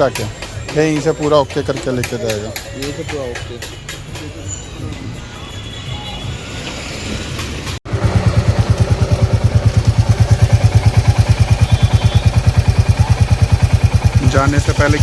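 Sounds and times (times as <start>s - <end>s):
workshop background noise: 0.0s - 7.8s
motorcycle engine idling: 7.9s - 15.0s.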